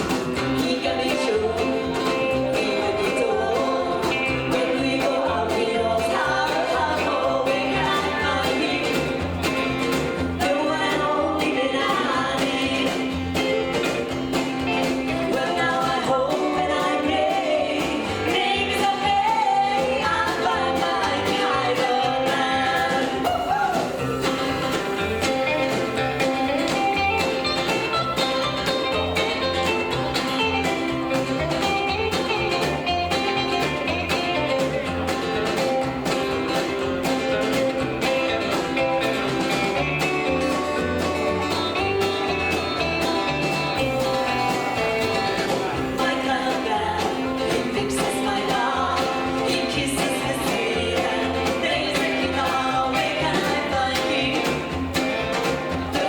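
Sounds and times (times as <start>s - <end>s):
person singing: 0.0s - 13.8s, 14.7s - 25.8s, 45.1s - 56.0s
rockabilly band playing: 0.0s - 56.0s.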